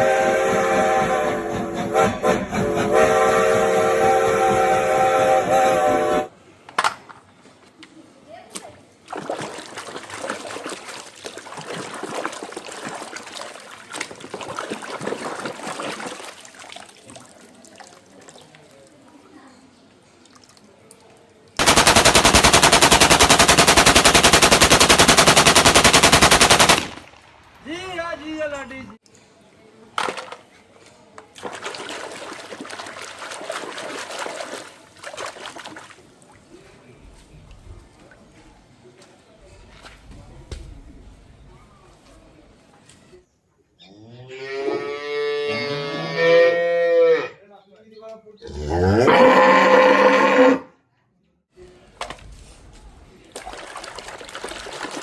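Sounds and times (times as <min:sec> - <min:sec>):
water splashing and trickling: 0:08.4 - 0:21.6, 0:31.3 - 0:38.8, 0:52.0 - 0:55.0.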